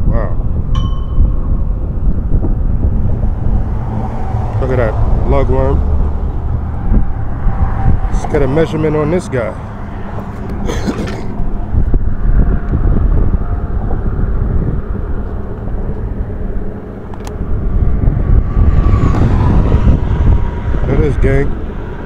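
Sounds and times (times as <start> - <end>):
road traffic rumbling: 0.0 - 22.0.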